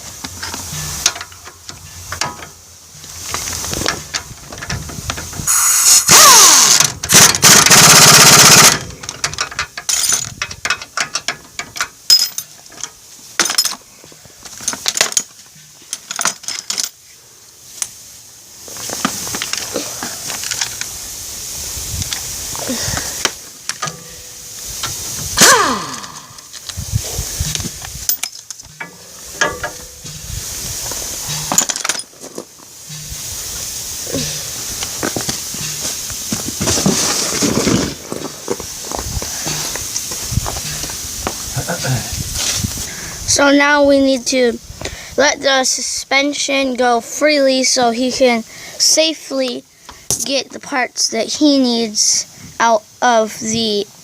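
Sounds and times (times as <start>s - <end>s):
metal clanks: 0.2s - 13.8s, 23.2s - 26.7s, 27.4s - 33.3s, 34.1s - 38.6s, 39.4s - 42.0s
ratchet clicks: 3.4s - 13.0s
loud power tool running: 5.5s - 8.9s.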